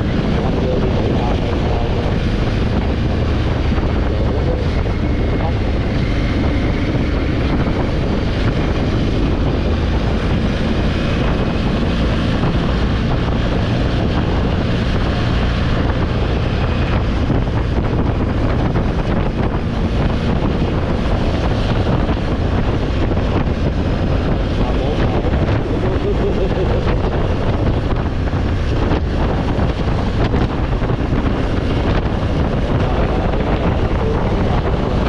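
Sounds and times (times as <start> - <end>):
motorcycle engine running: 0.0 - 35.0
wind buffeting microphone: 0.0 - 35.0.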